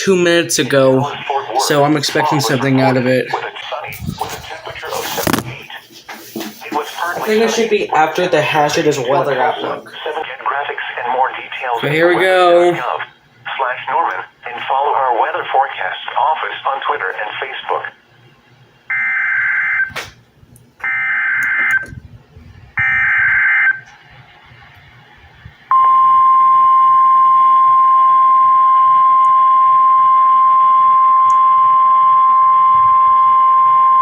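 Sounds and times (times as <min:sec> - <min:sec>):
single-pitch warning alarm tone: 0:18.9 - 0:19.9, 0:20.8 - 0:21.9, 0:22.8 - 0:23.8, 0:25.7 - 0:34.0.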